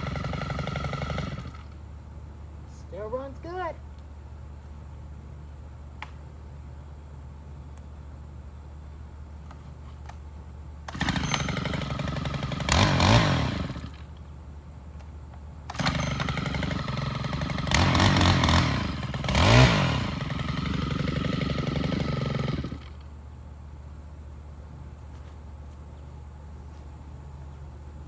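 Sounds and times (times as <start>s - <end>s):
string trimmer engine revving: 0.0s - 1.8s, 10.8s - 23.0s.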